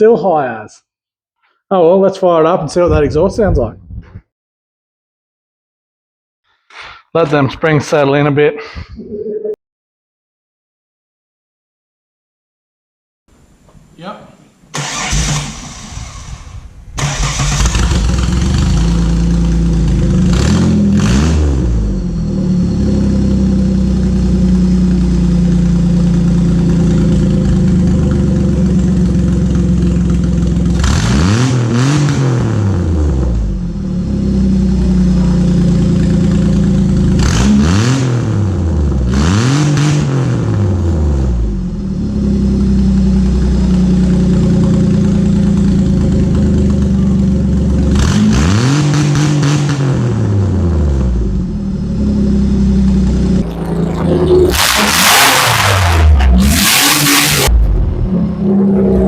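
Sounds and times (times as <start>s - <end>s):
loud car engine idling and revving: 14.8s - 59.0s.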